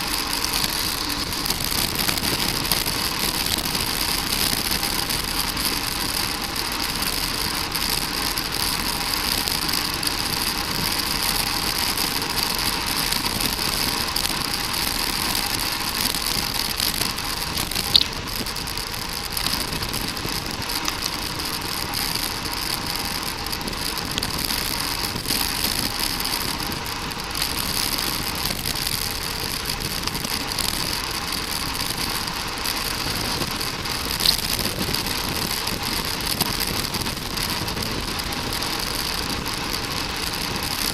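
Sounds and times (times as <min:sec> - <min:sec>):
wind and bicycle road noise: 0:00.0 - 0:40.9
sharp clicks: 0:17.0 - 0:18.5.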